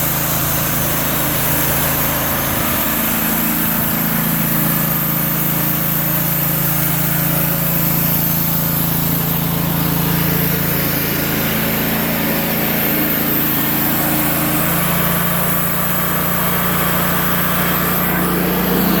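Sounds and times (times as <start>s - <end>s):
sawmill engine humming: 0.0s - 19.0s.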